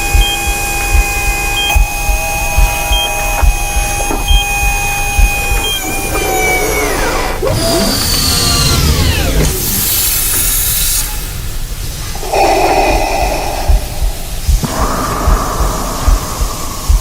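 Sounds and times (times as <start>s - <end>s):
electronic hum of several tones: 0.0s - 7.3s
low pulsing rumble: 0.0s - 9.6s, 11.8s - 17.0s.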